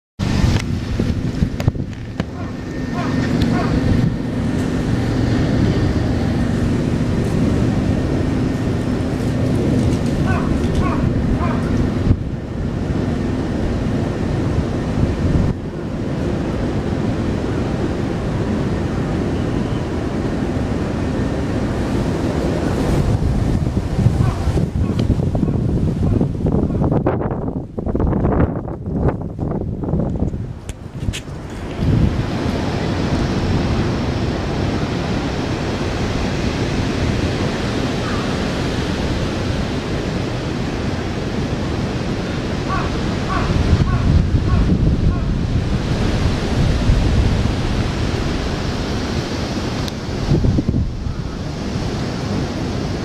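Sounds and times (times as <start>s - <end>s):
wind rumbling on microphone: 0.2s - 53.0s.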